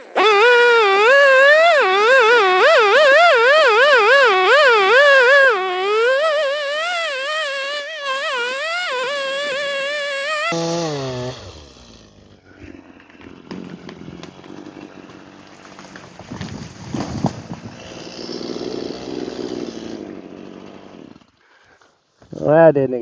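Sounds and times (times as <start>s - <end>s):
chainsaw engine: 0.0s - 12.4s, 17.9s - 20.7s.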